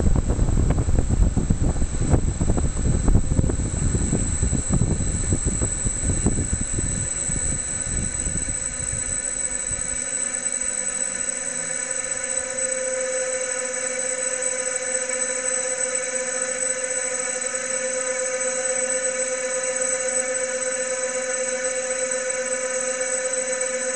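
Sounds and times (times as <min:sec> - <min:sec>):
wind buffeting microphone: 0:00.0 - 0:09.2
fan whining steadily: 0:00.0 - 0:23.9.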